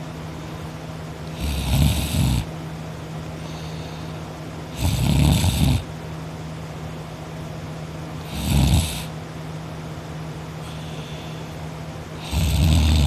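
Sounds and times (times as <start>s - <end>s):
person snoring: 1.4s - 2.5s, 4.8s - 5.9s, 8.3s - 9.1s, 12.2s - 13.0s.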